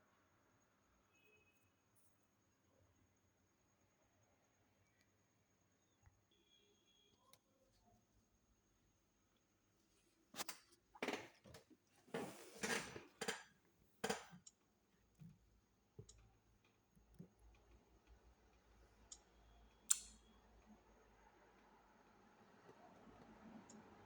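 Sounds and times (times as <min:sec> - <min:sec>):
sharp click: 0:19.9 - 0:20.2.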